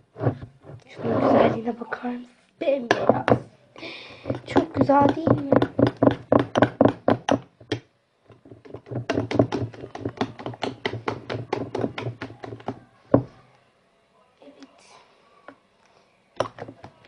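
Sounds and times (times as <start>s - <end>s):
utensil tapping mixing bowl: 4.2s - 13.3s.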